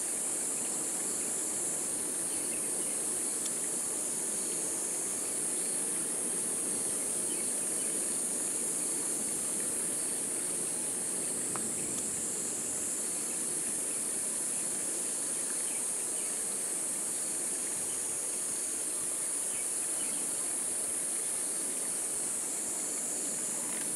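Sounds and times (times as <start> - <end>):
insects buzzing shrilly: 0.0 - 23.9.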